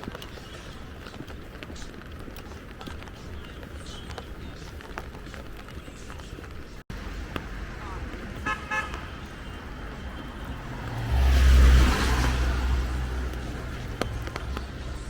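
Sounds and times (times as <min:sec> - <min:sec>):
car passing by: 0:06.9 - 0:15.0.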